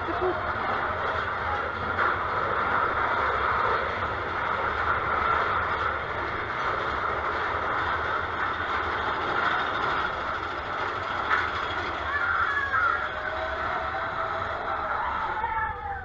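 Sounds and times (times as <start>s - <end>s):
roller coaster rushing on track: 0.0s - 16.0s.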